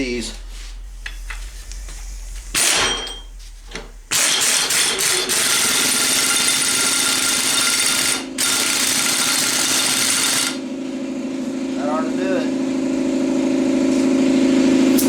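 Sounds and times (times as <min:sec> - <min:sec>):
pneumatic air tool running: 0:00.7 - 0:10.6.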